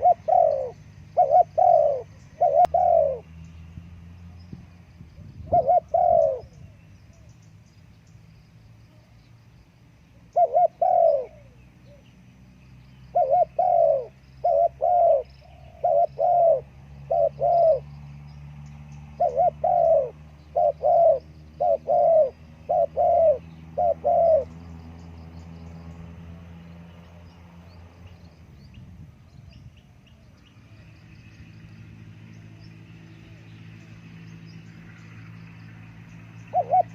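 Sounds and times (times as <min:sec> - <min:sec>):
dove cooing: 0:00.0 - 0:03.3, 0:05.4 - 0:07.3, 0:10.2 - 0:12.1, 0:13.1 - 0:17.9, 0:19.1 - 0:24.7, 0:36.5 - 0:36.9.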